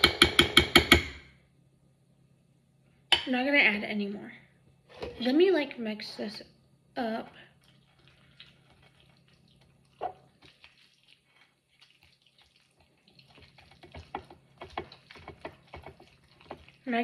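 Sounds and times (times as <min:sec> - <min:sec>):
wet squelching stirring in a bowl: 0:07.4 - 0:17.0.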